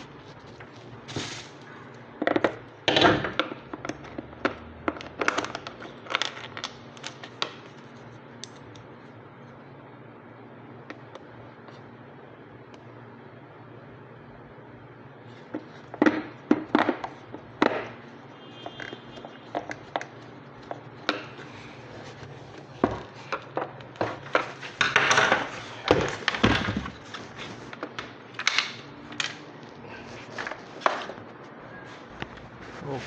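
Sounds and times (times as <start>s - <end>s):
plastic scraping and rustling: 0.0s - 2.6s, 15.4s - 33.0s.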